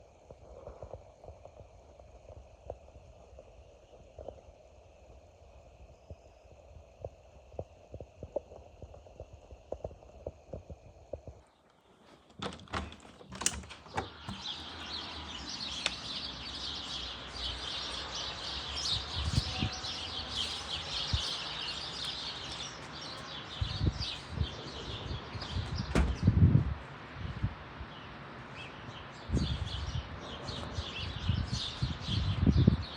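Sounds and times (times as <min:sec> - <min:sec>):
small birds chirping: 0:05.8 - 0:26.5, 0:27.2 - 0:32.9
low thumps: 0:25.4 - 0:26.4.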